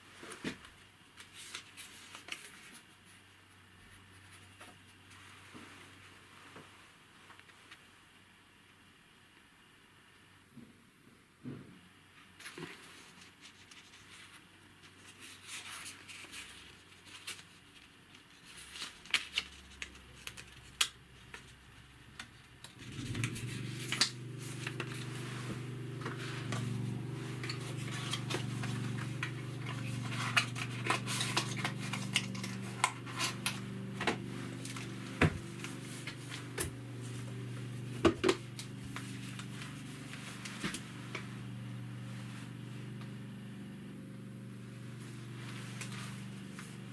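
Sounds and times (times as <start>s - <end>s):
steady low hum: 21.0s - 46.9s.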